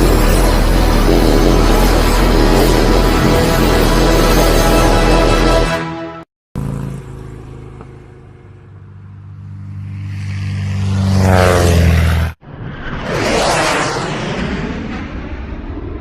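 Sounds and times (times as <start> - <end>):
engine approaching: 0.0 - 5.7, 6.6 - 15.9
noisy sound: 0.0 - 5.8.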